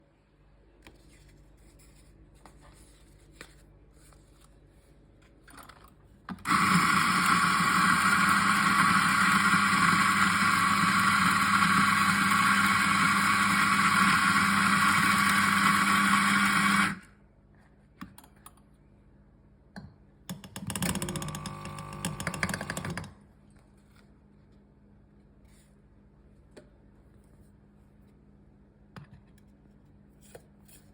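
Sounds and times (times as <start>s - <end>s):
electric coffee grinder grinding: 6.4s - 17.0s, 20.9s - 23.0s.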